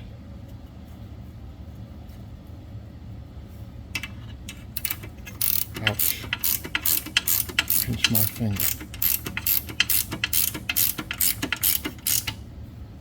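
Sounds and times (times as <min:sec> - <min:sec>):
ratchet wrench clicking: 0:04.8 - 0:12.4.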